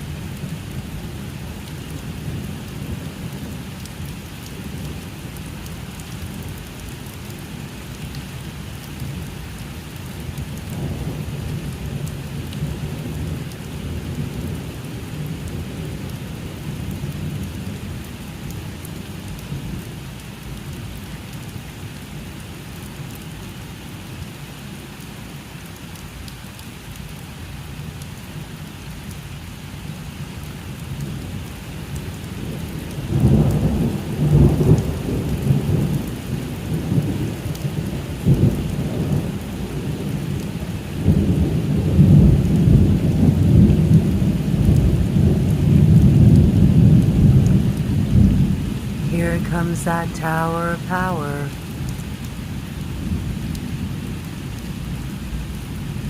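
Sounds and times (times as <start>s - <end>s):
steady rain: 0.0s - 56.0s
low rolling thunder: 32.4s - 40.4s, 41.0s - 49.1s.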